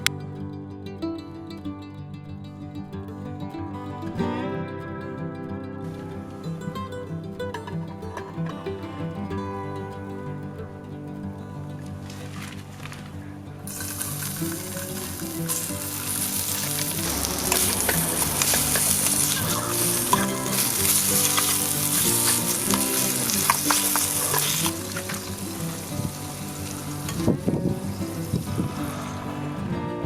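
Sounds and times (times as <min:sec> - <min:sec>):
stirring clicks and scrapes: 0:12.1 - 0:27.4
bacon sizzling in oil: 0:13.7 - 0:27.2.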